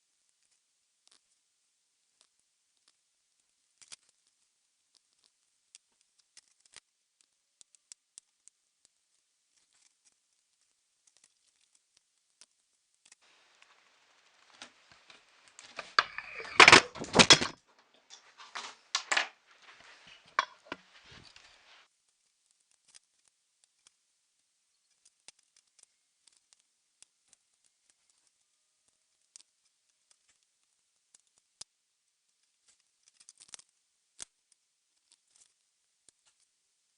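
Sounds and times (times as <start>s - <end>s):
rustling: 13.0s - 21.9s
loud knocks and rattling: 15.7s - 17.6s.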